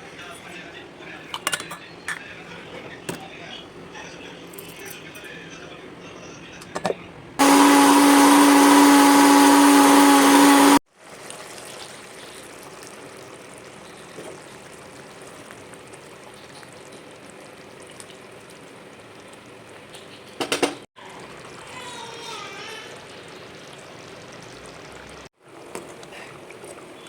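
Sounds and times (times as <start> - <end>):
mixer grinder running: 7.4 - 10.8.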